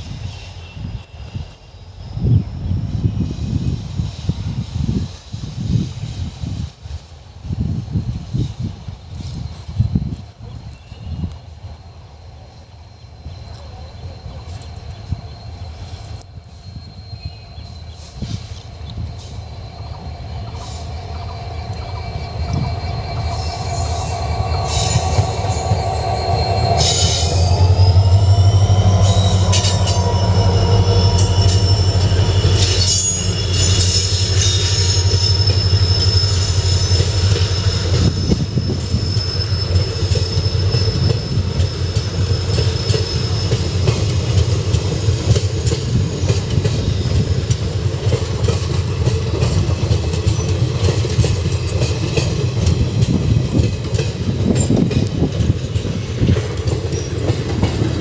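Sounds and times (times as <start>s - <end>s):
train rumbling: 0.0s - 58.0s
high-pitched wheel squeal: 14.6s - 44.2s.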